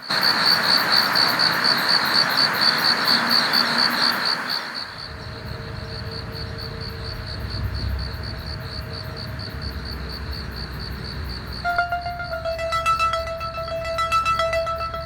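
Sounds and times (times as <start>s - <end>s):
plucked-string tune: 11.7s - 15.0s.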